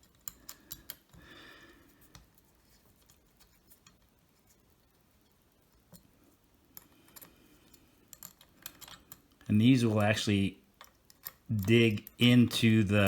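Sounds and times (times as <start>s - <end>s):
allen wrench clicking on metal: 0.0s - 1.2s, 6.8s - 9.4s, 10.8s - 12.3s.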